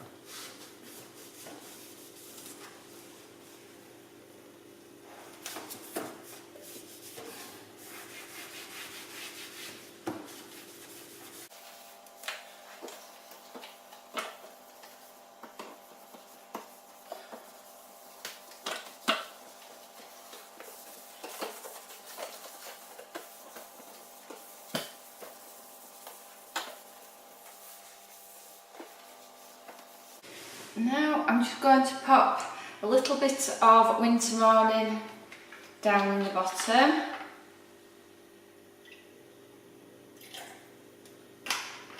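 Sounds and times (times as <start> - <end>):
cloth wiping: 5.6 - 12.0, 12.6 - 30.8.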